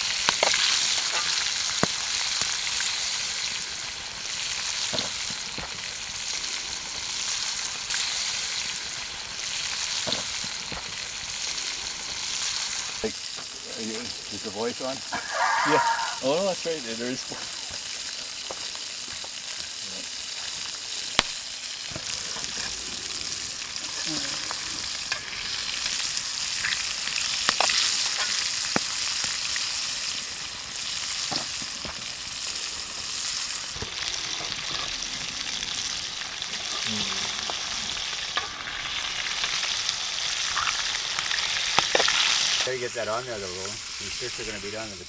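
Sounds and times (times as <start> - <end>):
fish sizzling in oil: 0.0 - 45.0
oil popping: 8.7 - 32.3.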